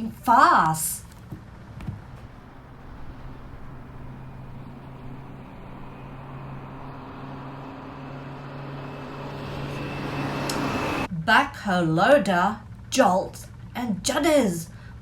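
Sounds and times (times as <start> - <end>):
vehicle engine humming: 1.2 - 11.1
road noise: 1.4 - 11.1.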